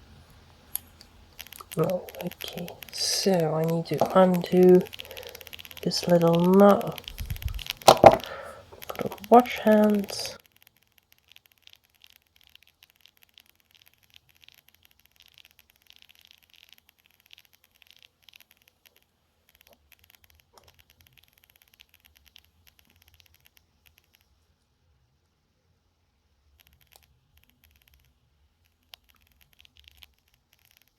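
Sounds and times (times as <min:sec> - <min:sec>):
small hand tools scratching and clicking: 0:00.7 - 0:24.4, 0:26.5 - 0:30.9.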